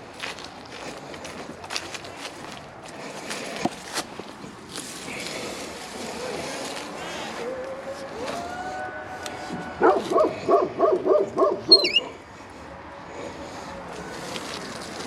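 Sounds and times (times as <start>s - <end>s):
dog barking: 9.8s - 12.1s.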